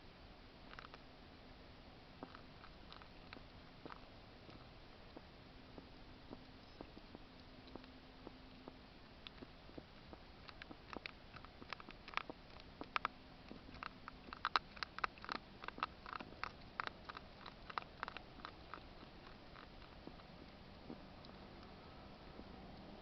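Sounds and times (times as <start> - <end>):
hedgehog chewing: 0.6 - 1.0, 2.2 - 23.0.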